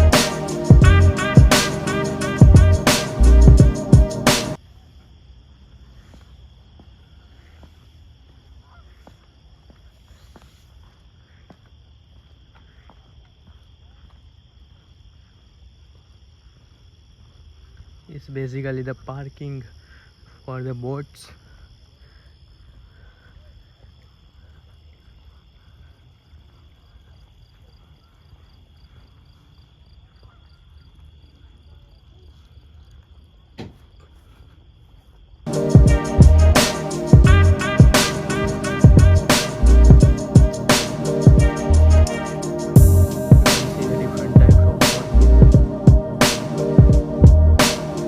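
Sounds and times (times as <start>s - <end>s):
loud music with a beat: 0.0s - 4.6s, 35.5s - 48.0s
crickets chirping: 0.0s - 48.0s
high-pitched insect chorus: 0.0s - 48.0s
low rumble: 38.8s - 40.6s, 42.8s - 43.5s, 44.3s - 46.2s, 46.8s - 47.6s.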